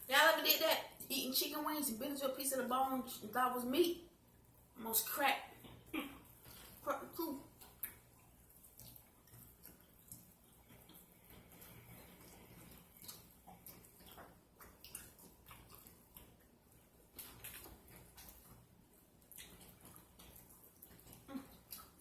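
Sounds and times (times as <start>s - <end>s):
wet chewing and lip-smacking: 7.4s - 22.0s.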